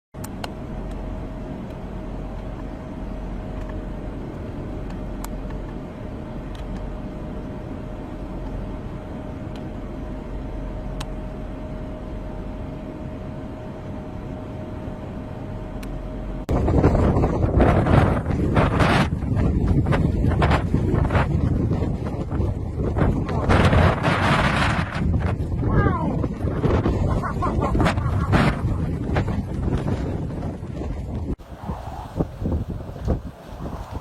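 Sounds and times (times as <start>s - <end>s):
mid-pitched hum: 0.2s - 34.0s
low rumble: 0.4s - 34.0s
wind buffeting microphone: 16.5s - 34.0s.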